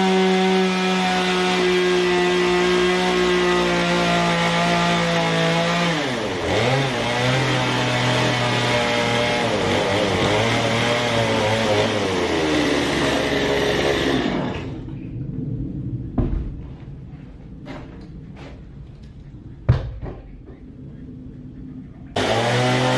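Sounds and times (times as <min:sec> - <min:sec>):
chainsaw cutting wood: 0:00.0 - 0:14.8, 0:22.2 - 0:22.9.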